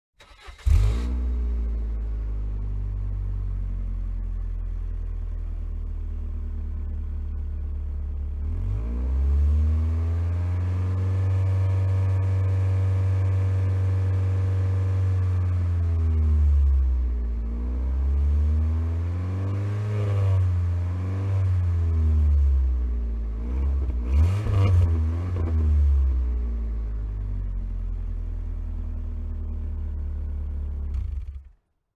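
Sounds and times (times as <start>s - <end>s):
car engine revving: 0.2s - 1.7s, 23.3s - 26.2s
car engine starting and idling: 0.2s - 8.8s, 23.5s - 31.6s.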